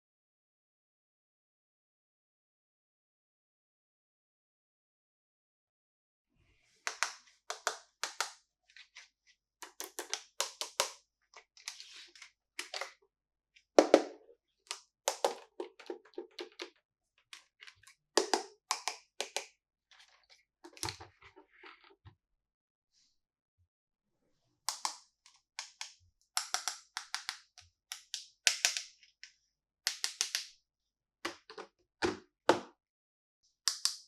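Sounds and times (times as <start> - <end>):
plastic clicks and taps: 18.2 - 19.5, 24.7 - 28.9, 29.9 - 30.5.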